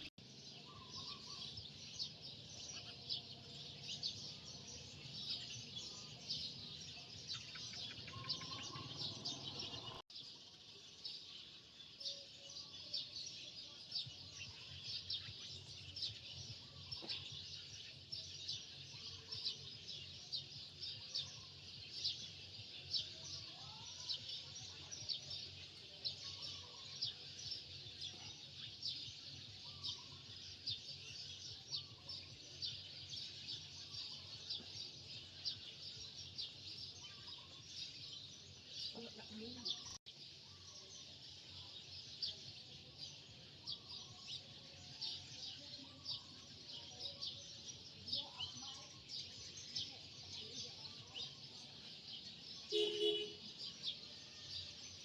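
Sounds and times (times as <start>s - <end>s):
small birds chirping: 0.0s - 55.0s.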